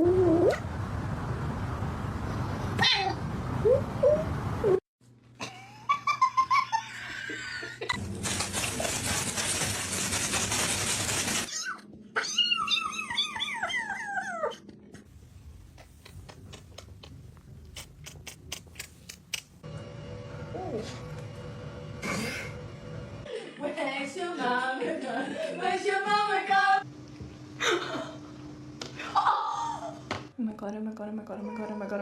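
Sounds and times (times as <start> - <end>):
pet whining cries: 11.5 - 14.6.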